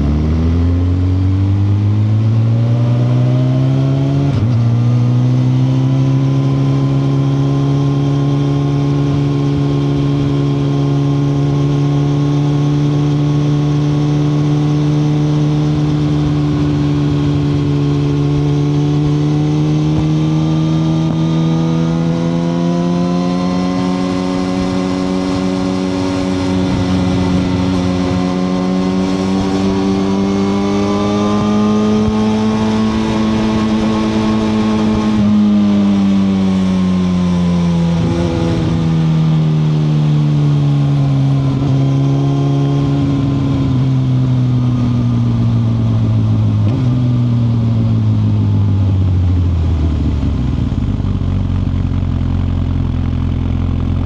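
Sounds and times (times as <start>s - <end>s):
motorcycle engine accelerating: 0.0s - 54.0s
wind noise: 23.4s - 36.8s, 37.6s - 39.2s.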